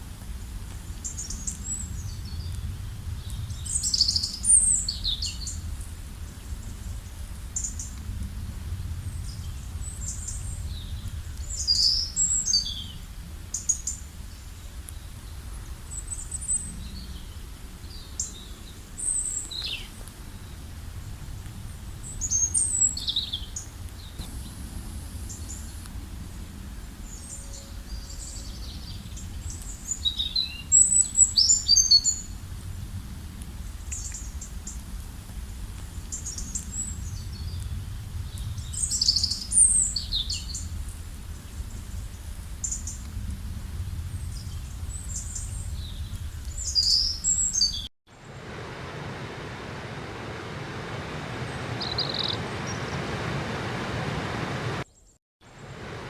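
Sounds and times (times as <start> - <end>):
small birds chirping: 0.9 - 8.0, 9.1 - 20.7, 36.0 - 43.0, 43.9 - 47.9, 51.4 - 53.0
steady low rumble: 23.6 - 29.9, 48.2 - 54.9.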